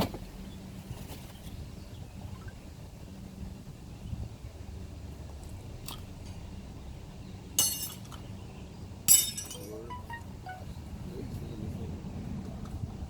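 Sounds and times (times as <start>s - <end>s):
glass crashing: 7.6s - 8.1s, 9.1s - 10.2s
glass pieces tinkling: 7.6s - 8.1s, 9.1s - 10.2s.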